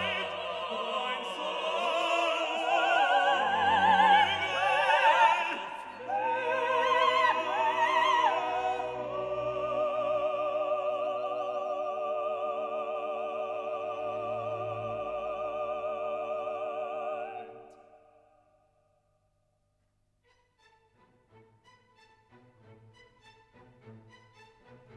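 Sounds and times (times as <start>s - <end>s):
operatic singing voice: 0.0s - 18.3s.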